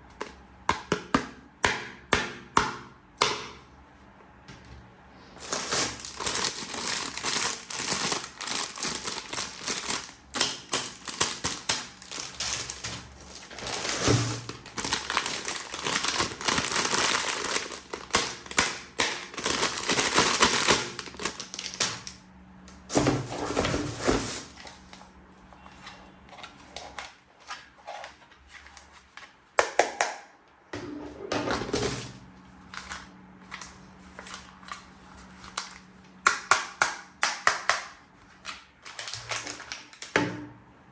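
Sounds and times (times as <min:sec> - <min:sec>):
plastic packaging crinkling: 0:05.4 - 0:22.2, 0:38.2 - 0:40.2.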